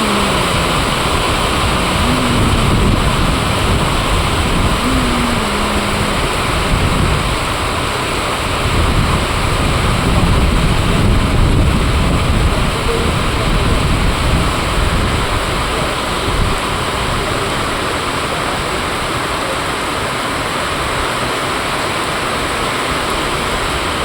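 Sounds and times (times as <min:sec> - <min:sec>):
heavy rain in wind: 0:00.0 - 0:24.0
short wavering tones: 0:04.8 - 0:07.1.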